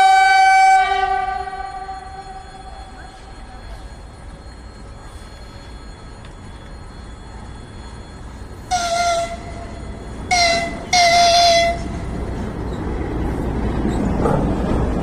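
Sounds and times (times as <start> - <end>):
locomotive horn blasts: 0.0 - 2.6, 8.7 - 12.1
train rumble approaching: 0.0 - 15.0.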